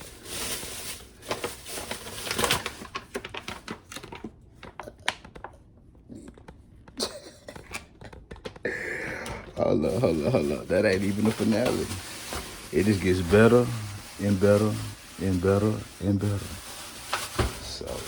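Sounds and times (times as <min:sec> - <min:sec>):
packaging crinkling: 0:00.0 - 0:05.6, 0:09.8 - 0:18.0.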